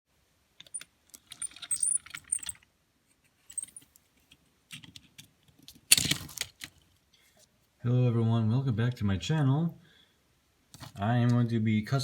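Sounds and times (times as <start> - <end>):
small metallic objects clinking: 0.6 - 2.6, 3.5 - 3.9.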